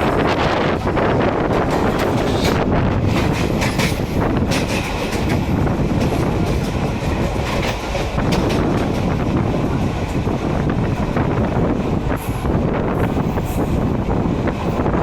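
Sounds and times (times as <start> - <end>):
train wheels rumbling on rails: 0.0 - 15.0
clicks and clatter over track: 1.4 - 9.3.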